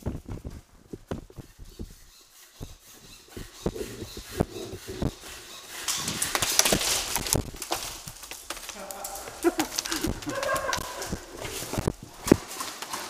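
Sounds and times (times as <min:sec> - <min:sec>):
crackly rustling and scraping: 0:00.0 - 0:13.0
footsteps: 0:00.0 - 0:13.0
clothing rustling: 0:05.8 - 0:13.0.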